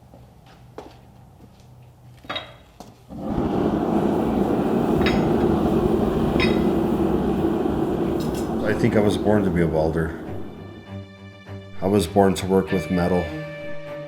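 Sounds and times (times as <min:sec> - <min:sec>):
loud steady rushing noise: 0:03.4 - 0:10.8.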